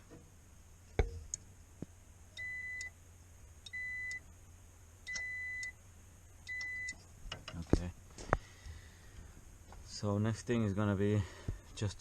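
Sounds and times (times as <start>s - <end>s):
multimeter continuity beep: 2.4s - 3.0s, 3.6s - 4.2s, 5.1s - 5.8s, 6.4s - 7.0s.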